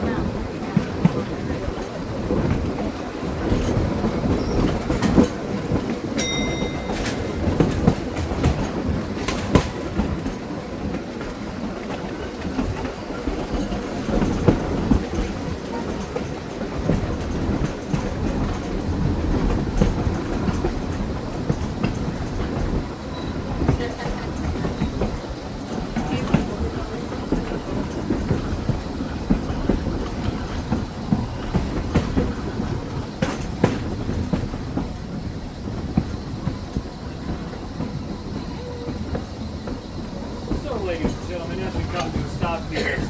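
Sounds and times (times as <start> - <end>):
trolley wheels rumbling: 0.0 - 43.0
wheels clacking over rails: 0.0 - 43.0
brief high tone: 6.2 - 7.5.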